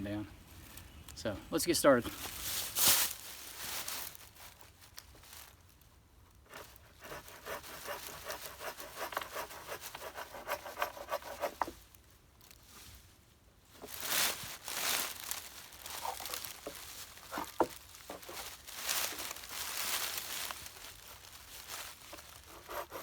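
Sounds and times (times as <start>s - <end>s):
loud rustle: 2.2s - 4.6s, 13.8s - 22.9s
saw cutting through a branch: 6.5s - 11.8s, 15.8s - 23.0s.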